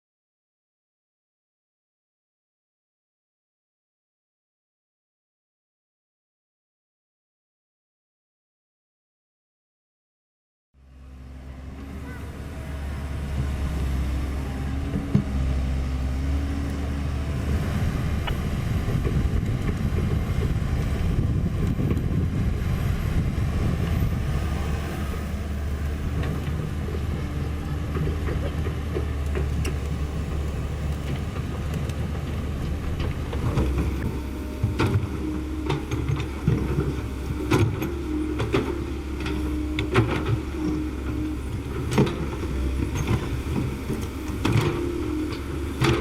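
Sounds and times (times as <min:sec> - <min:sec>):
excavator diesel engine running: 0:10.8 - 0:46.0.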